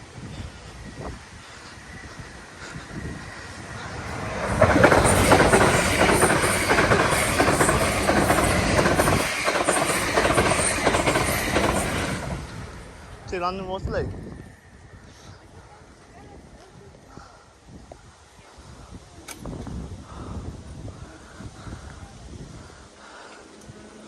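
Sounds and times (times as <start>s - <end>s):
fast train passing: 0.0s - 15.6s
train wheels clicking on rails: 0.2s - 13.2s.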